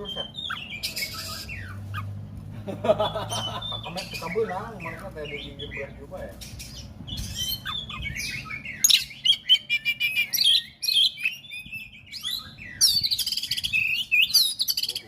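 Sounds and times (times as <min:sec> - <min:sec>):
bird singing: 0:00.0 - 0:02.2, 0:02.9 - 0:15.0
rapid bird trill: 0:00.0 - 0:02.2, 0:03.0 - 0:15.0.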